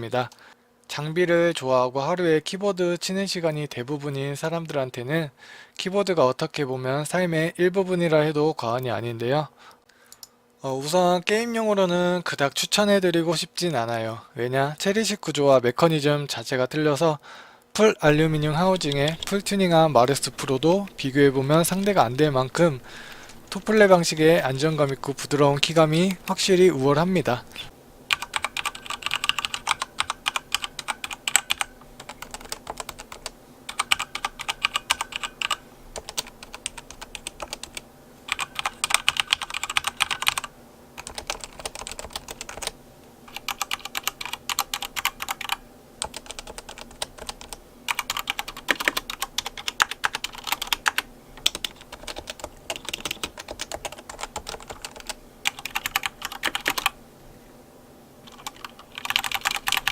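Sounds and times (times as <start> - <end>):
fast typing on computer keyboard: 18.1 - 26.4, 28.1 - 57.0, 58.3 - 59.9.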